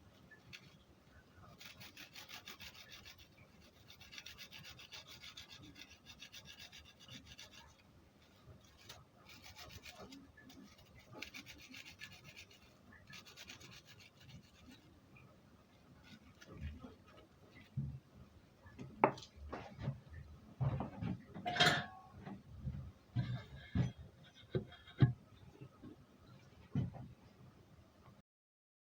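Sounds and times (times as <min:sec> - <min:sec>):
garlic rubbing against jar lid: 0:08.7 - 0:14.8.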